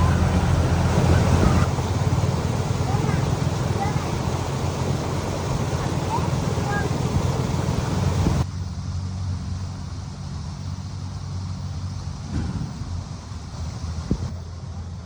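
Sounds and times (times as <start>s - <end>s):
loud hiss: 0.0s - 8.4s, 11.3s - 14.3s
engine idling: 0.0s - 15.0s.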